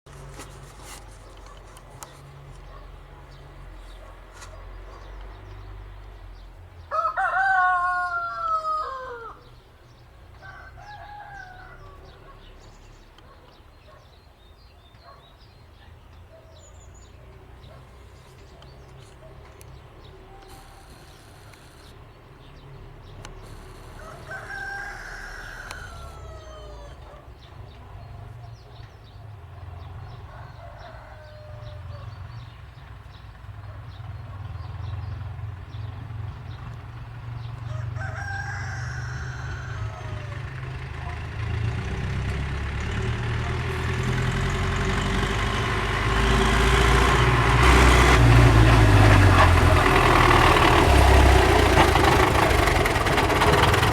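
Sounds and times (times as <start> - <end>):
rooster crowing: 6.8 - 9.6, 10.4 - 12.4, 23.6 - 27.2, 30.3 - 32.1, 37.7 - 41.2.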